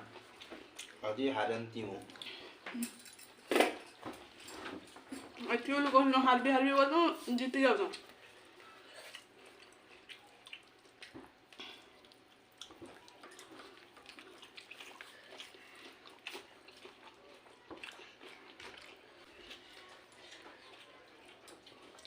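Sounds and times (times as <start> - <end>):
person chewing and slurping noodles: 8.1 - 22.0.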